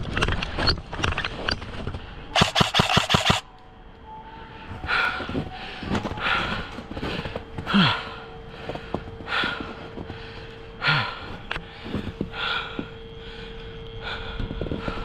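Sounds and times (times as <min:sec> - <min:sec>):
faint steady tone: 0:02.0 - 0:15.0
person breathing hard: 0:04.6 - 0:15.0.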